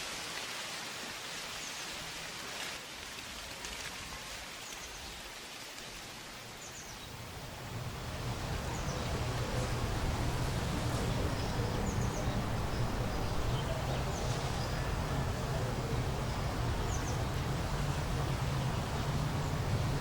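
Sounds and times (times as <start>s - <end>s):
steady hiss: 4.0s - 20.0s.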